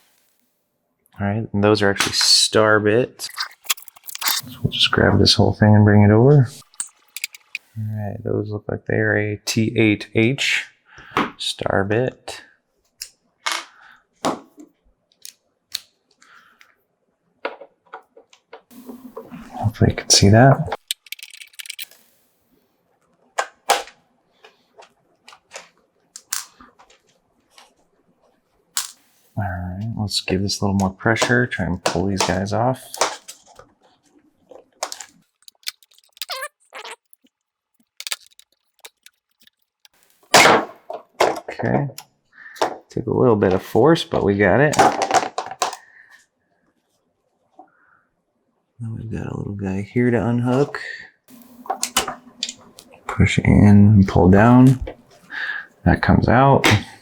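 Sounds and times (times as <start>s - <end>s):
screwdriver bits clicking and scraping: 3.2s - 4.7s, 6.6s - 7.7s, 20.7s - 22.1s, 26.2s - 26.6s, 34.8s - 40.3s
plastic part snapping free: 6.8s - 7.6s, 20.8s - 22.0s, 25.6s - 26.6s, 34.8s - 36.5s, 37.8s - 40.5s
plastic scraping: 31.9s - 40.4s
brief squeak: 36.1s - 37.0s.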